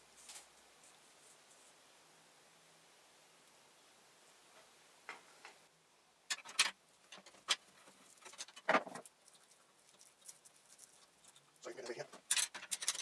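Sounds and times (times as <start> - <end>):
metal parts and tools clicking: 6.3 - 8.7, 12.2 - 13.0.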